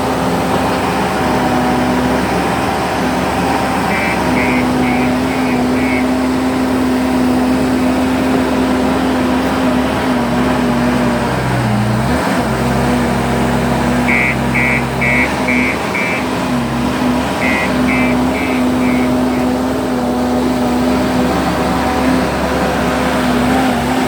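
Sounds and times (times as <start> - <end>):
diesel engine under load: 0.0 - 24.0
reverse alarm beeping: 3.8 - 6.2, 14.0 - 16.3, 17.4 - 19.5.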